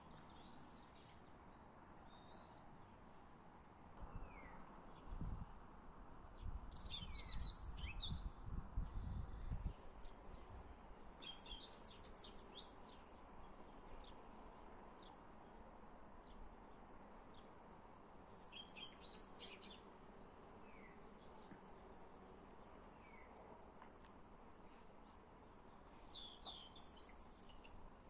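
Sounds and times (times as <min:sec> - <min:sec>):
songbird chirping and trilling: 0:06.7 - 0:15.2, 0:18.3 - 0:19.9, 0:25.7 - 0:27.8.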